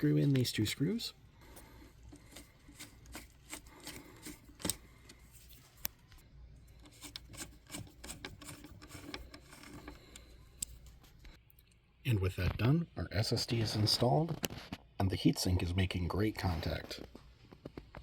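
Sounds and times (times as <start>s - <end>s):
screwdriver clicks and scraping: 2.0s - 6.0s, 6.8s - 11.0s.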